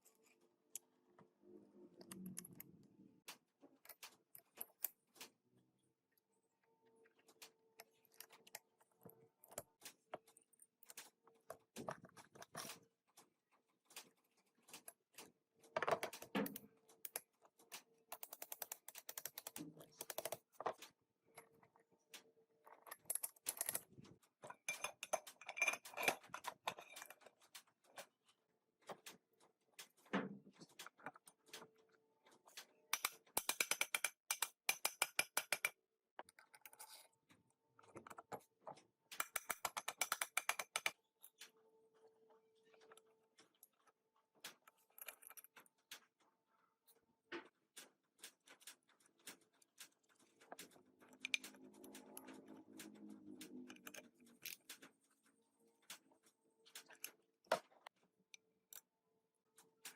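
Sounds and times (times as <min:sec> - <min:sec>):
metal parts clicking and clinking: 0:13.9 - 0:21.6, 0:22.6 - 0:28.1, 0:29.8 - 0:37.1, 0:37.8 - 0:41.5, 0:44.4 - 0:46.2, 0:47.8 - 0:55.0
rapid evenly spaced clicks: 0:47.7 - 0:57.0.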